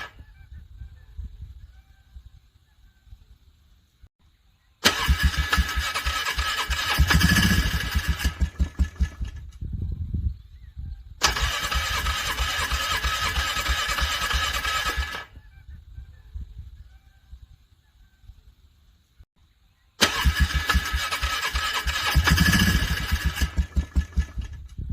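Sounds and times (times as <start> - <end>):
engine cranking on starter: 4.8 - 9.6, 11.2 - 15.3, 20.0 - 24.8.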